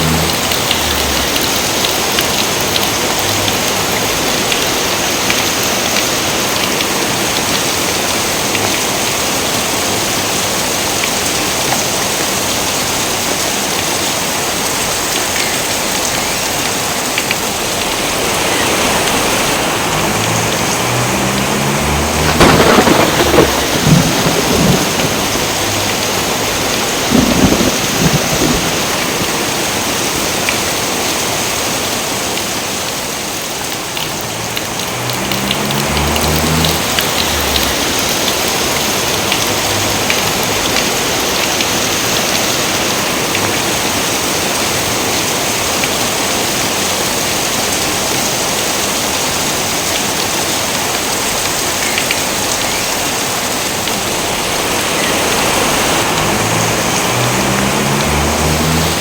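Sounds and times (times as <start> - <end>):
thunder rumbling and cracking: 0.0 - 4.6, 17.8 - 30.4, 34.0 - 42.7, 53.7 - 59.0
rain hissing: 0.0 - 59.0.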